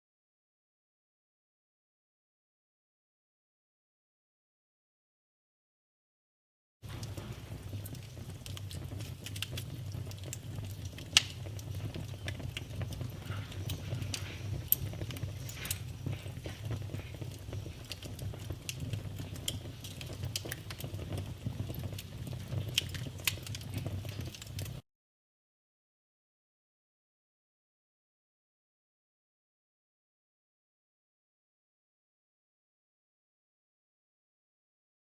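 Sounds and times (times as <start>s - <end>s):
low rumble of flames: 6.8s - 24.8s
wood crackling and popping: 6.8s - 24.8s.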